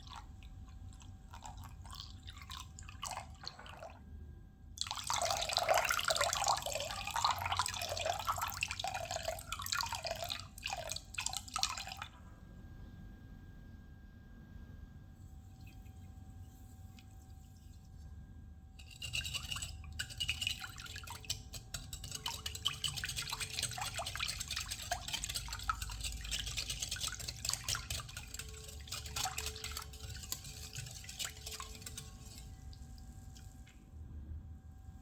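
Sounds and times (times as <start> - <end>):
batter whisked in a bowl: 0.0 - 12.4, 15.1 - 35.0.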